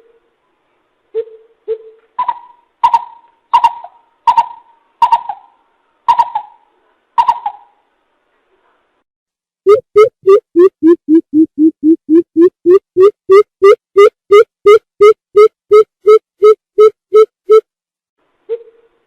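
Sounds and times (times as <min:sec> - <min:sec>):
bird calling hollow hoots: 0:01.2 - 0:06.6.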